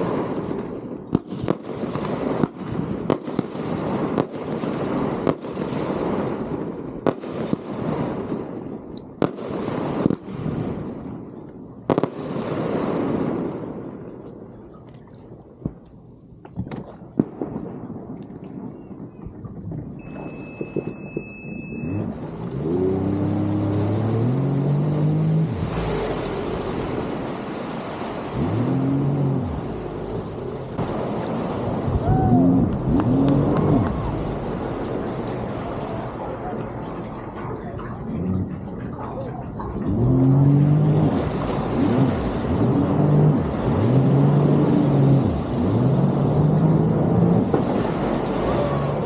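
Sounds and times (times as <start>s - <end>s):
jet ski engine revving: 21.2s - 36.9s, 37.8s - 49.0s
rushing noise: 21.6s - 36.8s.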